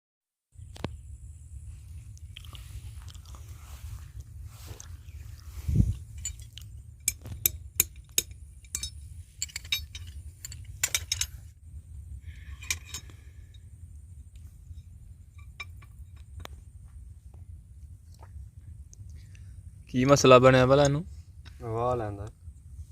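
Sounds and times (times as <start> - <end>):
low rumble: 0.6 - 21.7
metallic clinks and taps: 6.0 - 11.5, 12.4 - 13.6.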